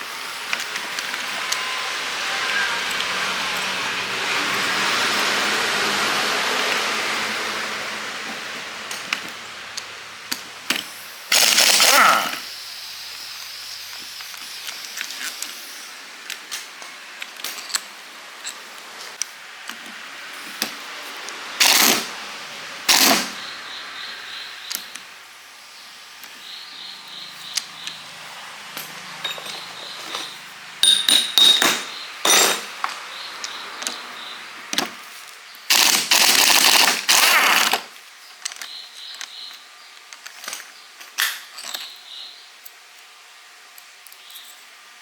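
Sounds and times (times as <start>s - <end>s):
loud hissing bursts: 10.8s - 16.2s, 21.0s - 26.2s, 35.7s - 37.9s
metal tools clinking: 16.3s - 18.8s, 28.7s - 34.1s, 38.4s - 42.1s.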